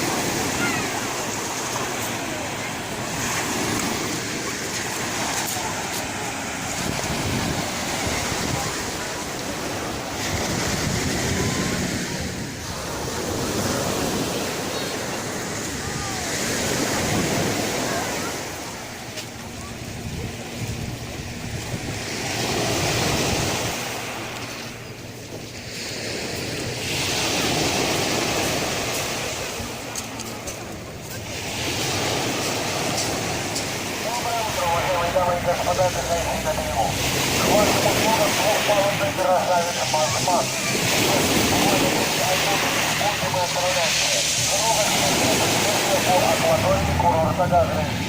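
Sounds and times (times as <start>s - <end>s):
sea surf washing on beach: 0.0s - 48.0s
indistinct voices: 27.1s - 48.0s.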